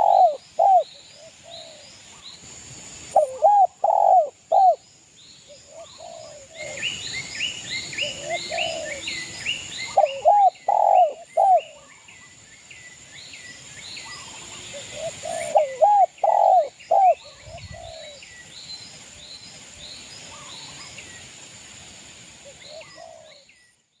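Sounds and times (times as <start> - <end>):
dove cooing: 0.0 - 1.8, 3.2 - 4.8, 5.7 - 6.9, 8.0 - 9.2, 9.9 - 11.9, 14.7 - 18.2, 22.7 - 23.4.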